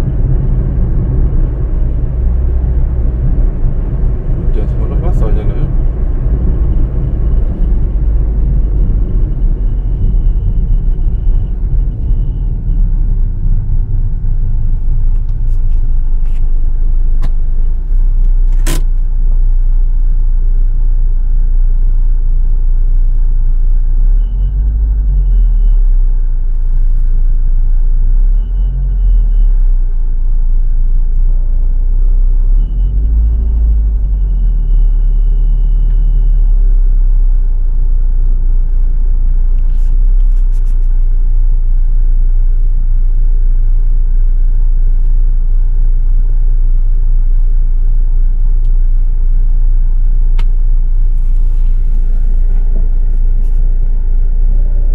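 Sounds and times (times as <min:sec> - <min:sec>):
car engine low rumble: 0:00.0 - 0:54.9
sharp click: 0:18.2 - 0:19.0.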